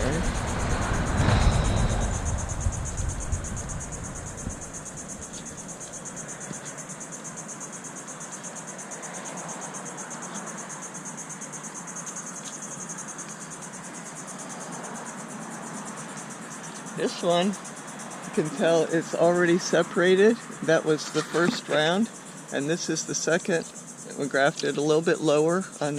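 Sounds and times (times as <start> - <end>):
low rumble: 0.0 - 5.3
crickets trilling: 0.0 - 25.9.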